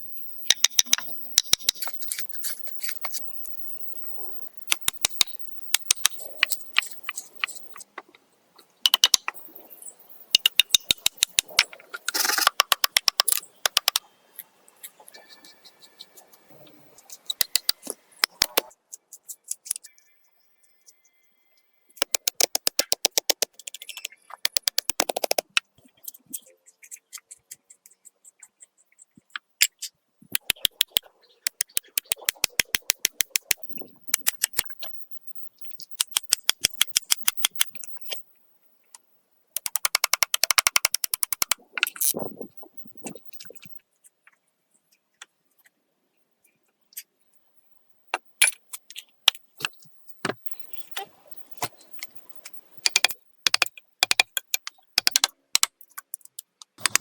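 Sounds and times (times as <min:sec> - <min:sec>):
rapid mechanical clicking: 0:22.0 - 0:25.6, 0:39.6 - 0:41.6, 0:52.8 - 0:57.0.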